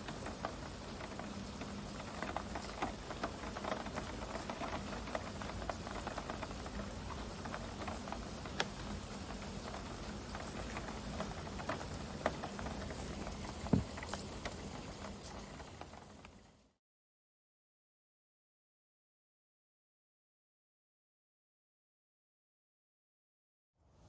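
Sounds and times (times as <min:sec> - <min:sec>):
rain pattering: 0:00.0 - 0:16.8.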